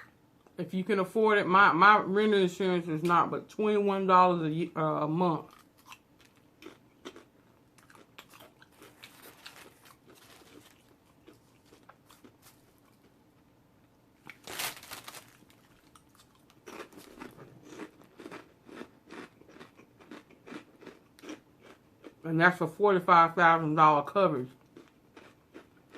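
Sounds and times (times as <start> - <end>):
chewing and crunching sandwich: 5.5 - 13.2, 14.2 - 22.2, 24.6 - 25.9.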